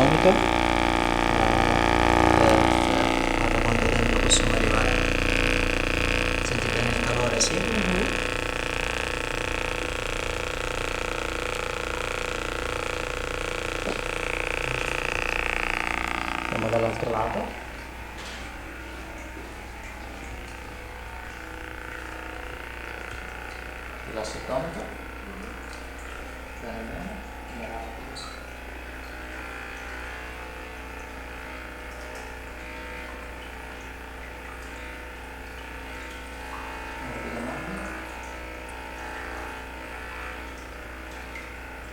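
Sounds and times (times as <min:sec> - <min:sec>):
massage device pulsing hum: 0:00.0 - 0:41.9.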